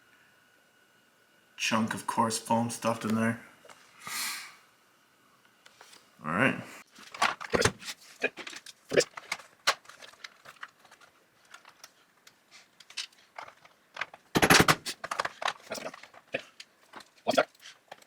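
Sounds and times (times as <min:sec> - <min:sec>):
tools clicking and knocking: 0:12.8 - 0:16.1.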